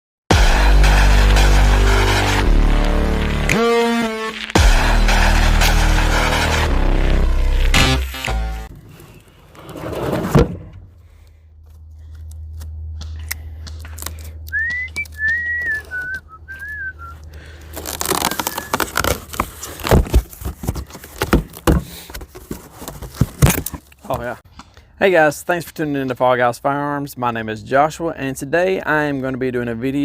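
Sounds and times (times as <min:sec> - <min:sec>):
person whistling a tune: 0:14.5 - 0:17.2, 0:18.5 - 0:18.9.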